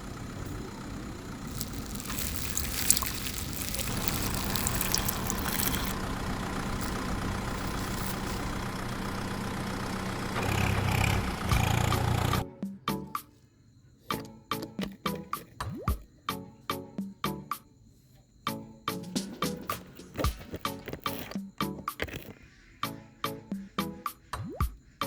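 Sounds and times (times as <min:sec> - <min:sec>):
motor running: 0:00.0 - 0:12.4
rattling and clicks: 0:01.4 - 0:09.4, 0:19.6 - 0:22.4.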